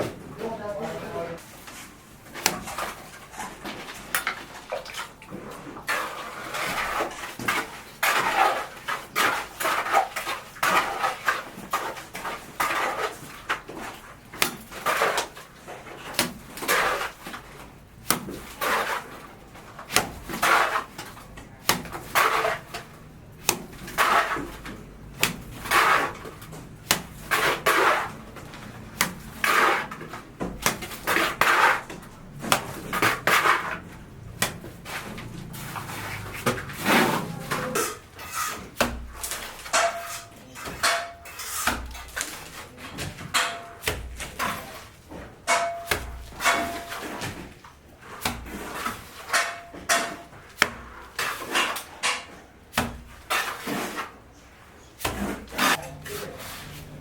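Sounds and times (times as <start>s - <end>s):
metal tools clattering and scraping: 22.0s - 47.6s.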